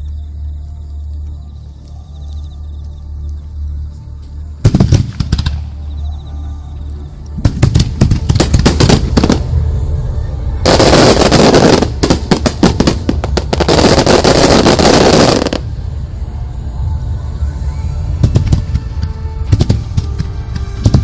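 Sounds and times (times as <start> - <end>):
fireworks crackle barrage: 4.2 - 6.0, 7.1 - 9.6, 10.6 - 16.0, 18.0 - 21.0
fireworks sharp reports: 4.6 - 6.1, 7.4 - 9.7, 10.6 - 16.0, 18.0 - 21.0.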